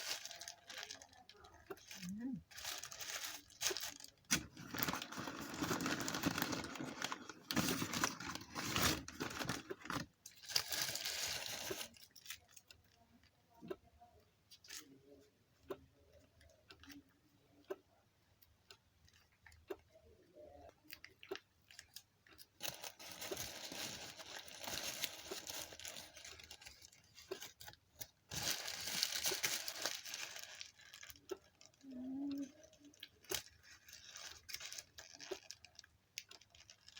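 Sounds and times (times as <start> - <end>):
packet crinkling: 0.0 - 12.7, 20.9 - 36.9.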